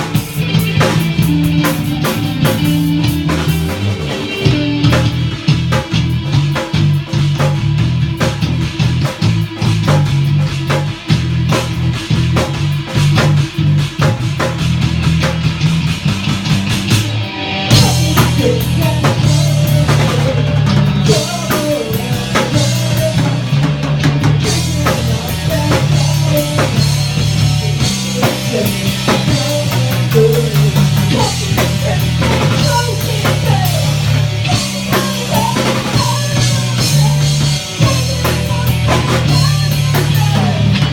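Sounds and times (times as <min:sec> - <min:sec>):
rock band playing: 0:00.0 - 0:40.9.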